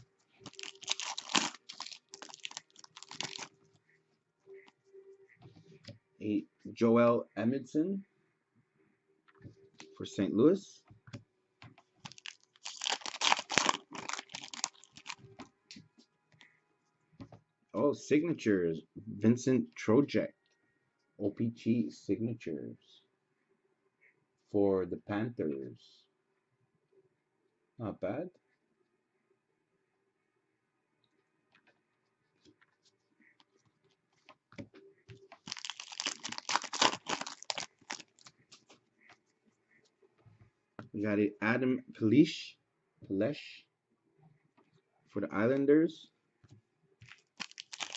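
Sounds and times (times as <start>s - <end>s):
foil wrapper crinkling and tearing: 0.4s - 3.5s, 12.0s - 15.2s, 35.4s - 38.3s, 47.0s - 47.9s.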